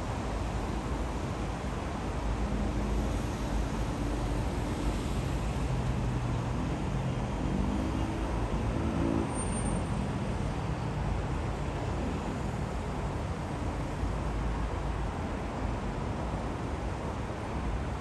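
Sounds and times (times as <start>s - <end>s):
city road traffic: 0.0s - 18.0s.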